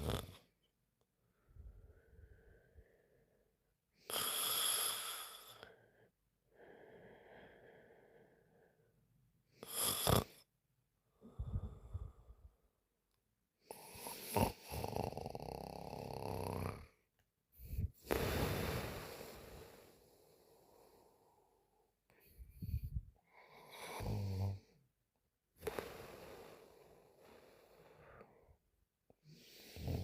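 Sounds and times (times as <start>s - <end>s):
woman snoring: 0.0s - 0.4s, 4.0s - 5.7s, 9.6s - 10.4s, 13.7s - 17.0s, 17.7s - 21.3s, 22.9s - 24.8s, 25.6s - 28.3s, 29.3s - 30.0s.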